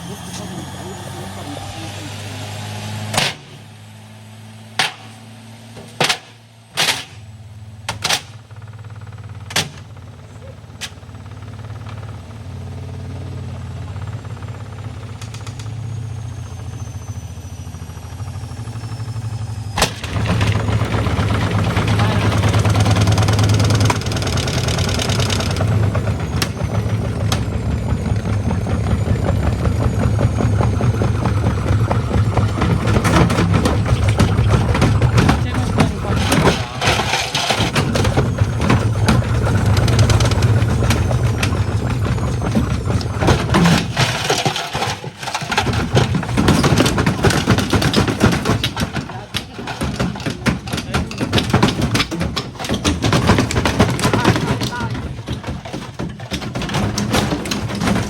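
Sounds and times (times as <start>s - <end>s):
washing machine humming: 0.0s - 58.0s.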